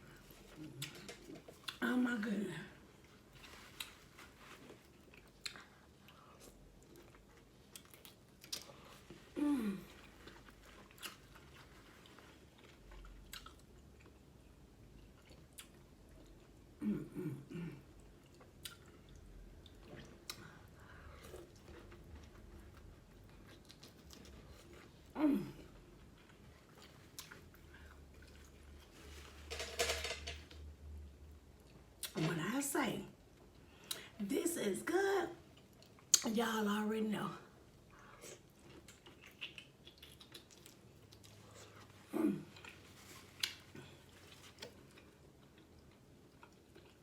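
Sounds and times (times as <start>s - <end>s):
chewing wet mouth sounds: 3.0s - 16.8s, 17.9s - 28.8s, 37.9s - 47.0s.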